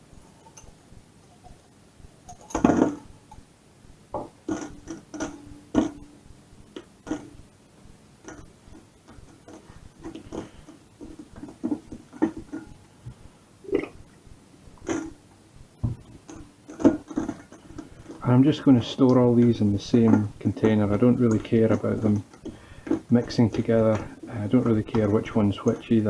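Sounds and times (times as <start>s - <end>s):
kitchen containers and utensils clinking: 15.9s - 26.0s.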